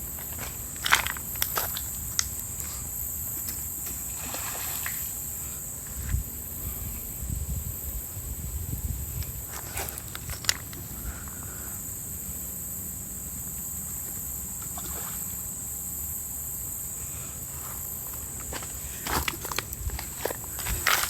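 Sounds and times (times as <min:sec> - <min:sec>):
insect chorus: 0:00.0 - 0:21.0
footstep crunches: 0:17.7 - 0:21.0.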